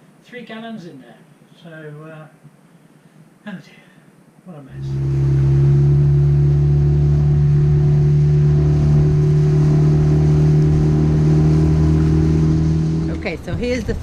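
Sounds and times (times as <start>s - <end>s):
motor low drone: 4.7s - 14.0s.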